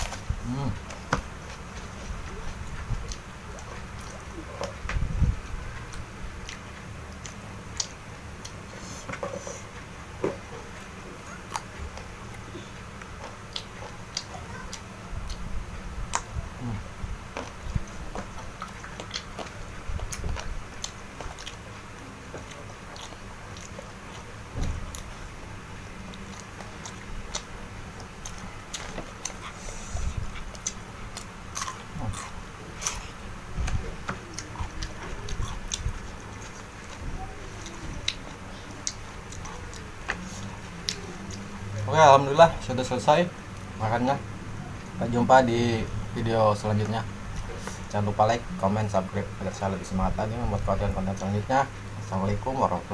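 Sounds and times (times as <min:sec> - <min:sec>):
person chewing and biting: 0:11.2 - 0:41.5.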